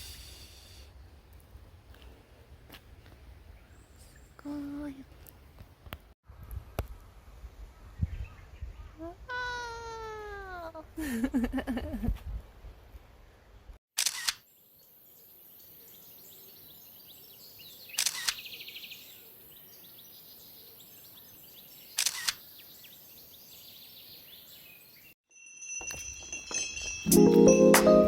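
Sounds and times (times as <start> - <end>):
faint outdoor background: 0.0 - 28.0
camera shutter clicks: 14.0 - 14.4, 18.0 - 18.5, 22.0 - 22.4.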